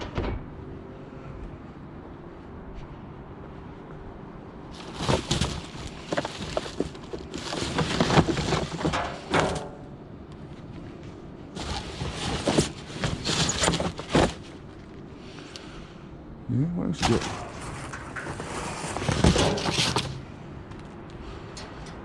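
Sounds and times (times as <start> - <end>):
rummaging through junk: 4.7 - 9.9, 11.5 - 14.8, 17.0 - 20.4
rustling and clattering knocks: 4.8 - 9.9, 11.6 - 14.8, 17.0 - 20.9.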